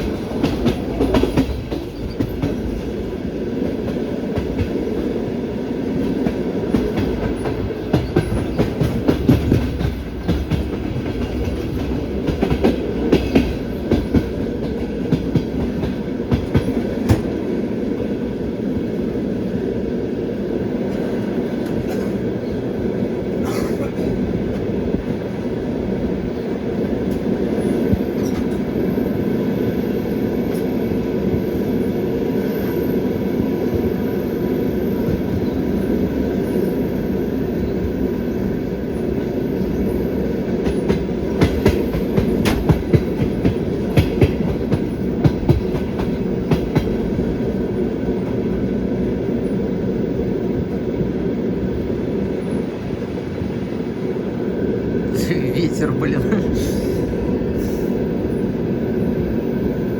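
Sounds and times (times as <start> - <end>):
wheels clacking over rail joints: 0.0 - 3.0, 6.0 - 17.4, 40.5 - 47.3
train wheels rumbling on rails: 0.0 - 59.9.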